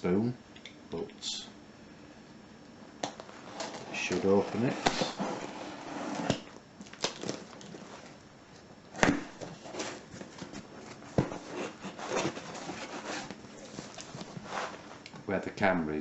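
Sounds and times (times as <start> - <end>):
knife cutting cardboard and tape: 3.6 - 6.5, 11.2 - 13.3.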